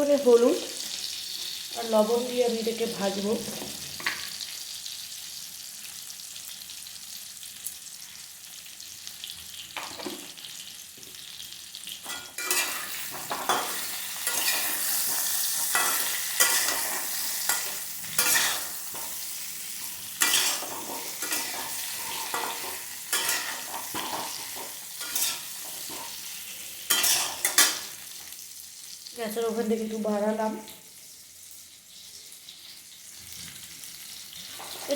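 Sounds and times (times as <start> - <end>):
potatoes sizzling in oil: 0.0 - 34.9
spatula scraping pan: 12.1 - 27.9.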